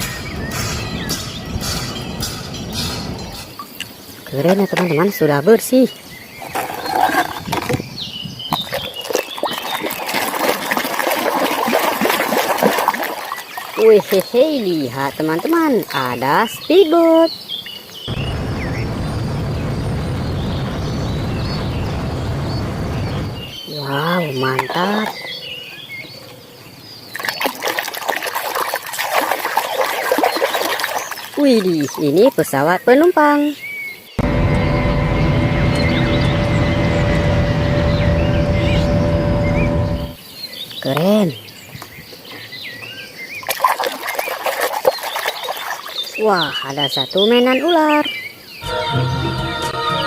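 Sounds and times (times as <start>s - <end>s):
water splashing over plastic: 5.8s - 16.8s, 27.1s - 33.4s, 43.4s - 47.0s.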